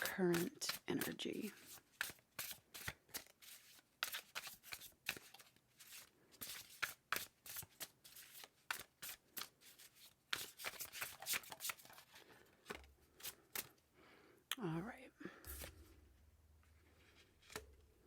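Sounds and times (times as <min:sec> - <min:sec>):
cards being shuffled: 0:00.0 - 0:13.8.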